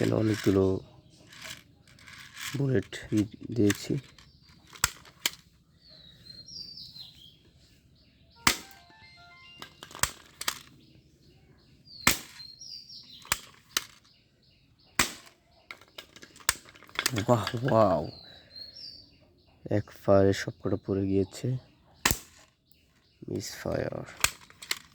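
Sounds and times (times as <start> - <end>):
high chirps and beeping tones: 8.4 - 9.9
toy gun firing: 8.4 - 10.6, 12.1 - 12.4, 15.0 - 15.4, 22.1 - 22.4.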